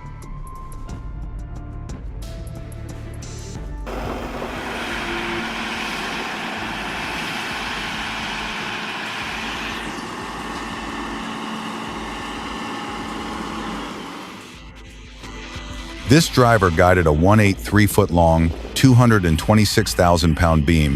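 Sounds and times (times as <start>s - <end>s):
road and traffic noise: 3.9s - 14.6s
heavy truck engine running: 3.9s - 15.1s.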